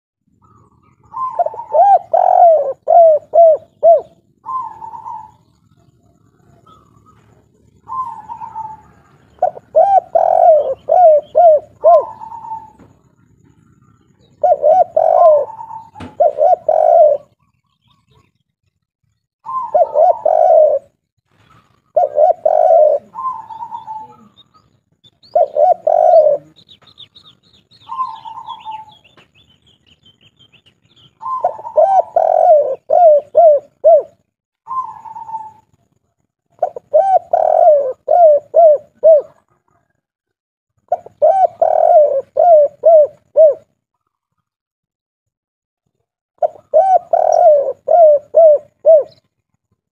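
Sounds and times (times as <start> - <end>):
dove cooing: 0.3 - 18.3, 19.4 - 21.0, 21.6 - 29.5, 30.4 - 40.1, 40.9 - 43.8, 46.4 - 49.3
small bird twittering: 6.4 - 18.4, 21.4 - 34.0.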